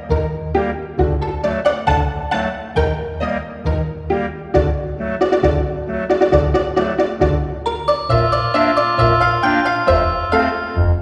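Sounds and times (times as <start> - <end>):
light cheerful background music: 0.0 - 11.0.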